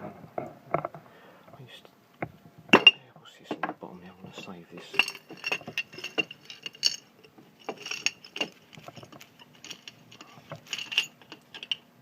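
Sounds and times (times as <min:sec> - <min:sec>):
lead scraps clinking: 0:04.3 - 0:11.8.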